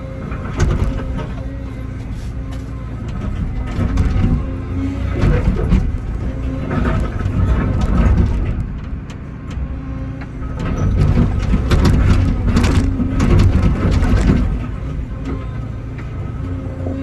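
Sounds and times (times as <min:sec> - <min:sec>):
excavator diesel engine running: 0:00.0 - 0:17.0
concrete breaking knocks and scrapes: 0:05.0 - 0:09.1, 0:10.6 - 0:15.5.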